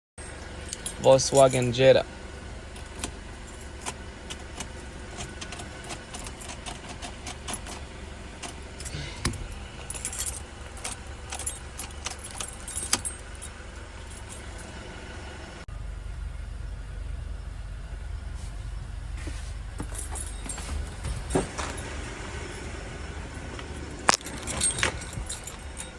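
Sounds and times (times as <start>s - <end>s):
car keys jangling: 0.2s - 2.0s, 2.7s - 14.8s, 19.2s - 25.9s
steady low hum: 0.2s - 25.9s.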